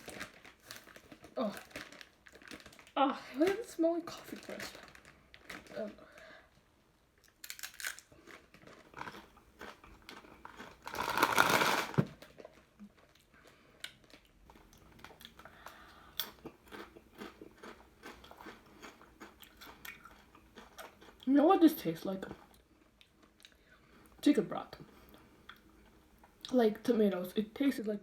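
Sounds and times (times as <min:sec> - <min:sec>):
potato chips crunching: 0:00.0 - 0:06.2, 0:07.2 - 0:21.3.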